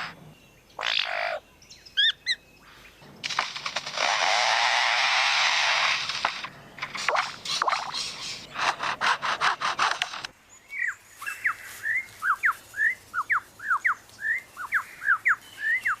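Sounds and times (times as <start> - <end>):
bird imitating a chainsaw: 3.3 - 10.3.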